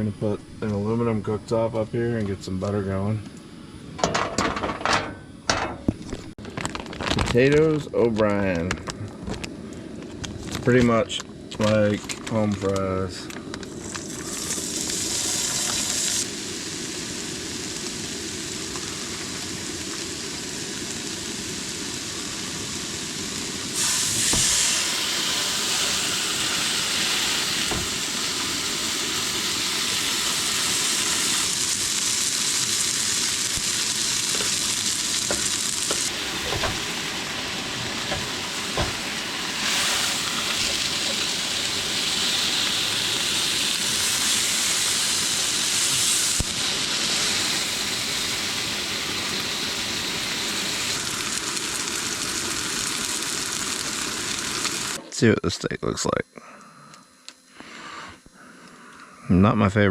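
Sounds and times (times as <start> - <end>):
gas burner rushing: 8.4 - 55.0
potatoes sizzling in butter: 10.2 - 55.0.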